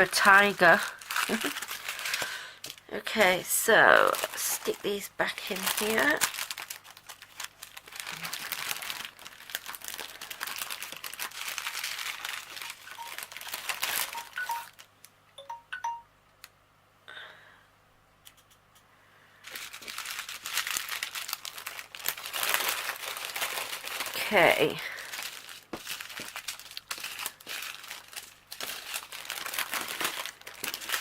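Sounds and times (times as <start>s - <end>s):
plastic bags crinkling: 0.0s - 14.9s, 19.4s - 31.0s.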